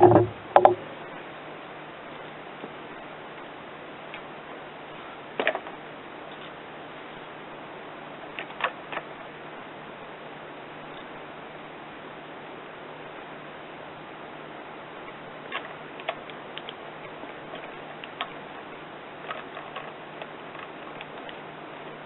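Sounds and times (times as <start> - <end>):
metallic clicks and knocks: 0.0 - 0.8
steady hiss: 0.0 - 22.0.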